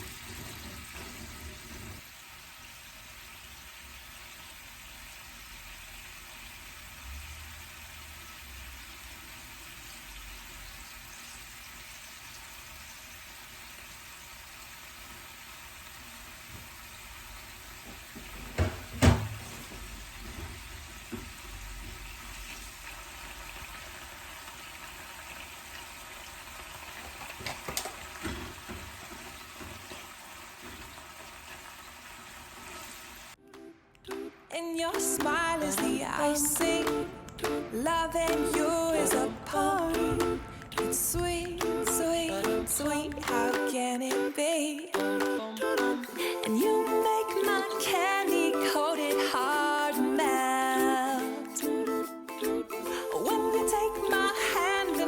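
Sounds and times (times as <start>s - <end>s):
food hissing in a pan: 0.0s - 18.4s, 28.0s - 33.4s
cookware knocks: 18.4s - 19.4s.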